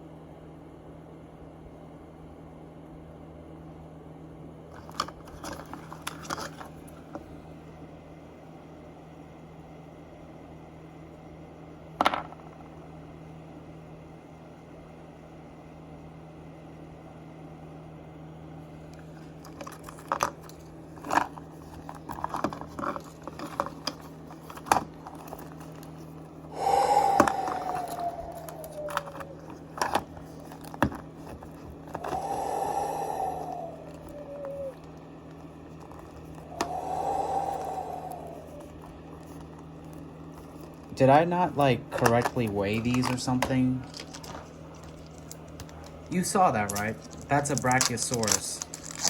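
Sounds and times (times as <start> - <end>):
wrapping crinkling and scraping: 19.2 - 26.3, 28.6 - 32.2, 42.0 - 49.0.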